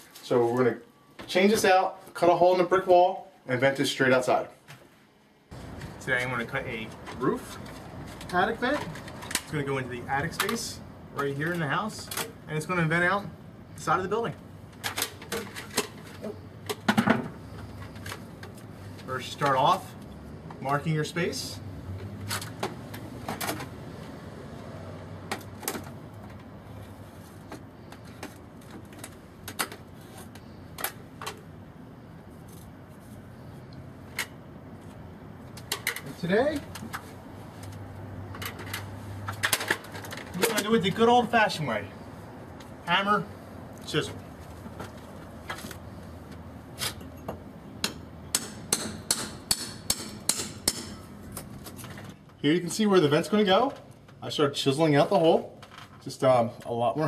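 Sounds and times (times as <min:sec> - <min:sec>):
hammer striking chisel into brick: 0:47.8 - 0:51.0.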